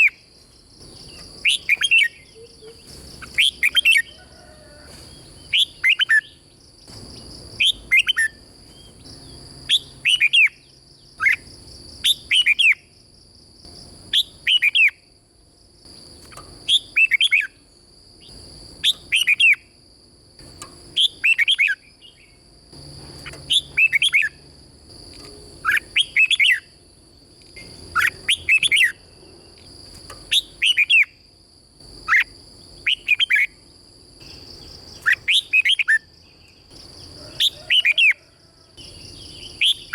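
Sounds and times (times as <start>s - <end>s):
bulbul singing whistled phrases: 0.9s - 4.2s, 5.2s - 6.4s, 7.2s - 12.9s, 14.1s - 15.0s, 16.3s - 17.6s, 18.2s - 19.7s, 20.9s - 22.4s, 23.2s - 24.4s, 25.6s - 26.8s, 27.6s - 29.0s, 30.2s - 31.2s, 32.0s - 33.6s, 34.2s - 36.7s, 38.8s - 39.9s.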